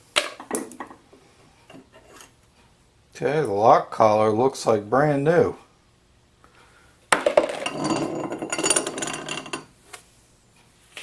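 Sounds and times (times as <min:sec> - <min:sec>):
steel parts clinking and rattling: 0:07.2 - 0:09.7.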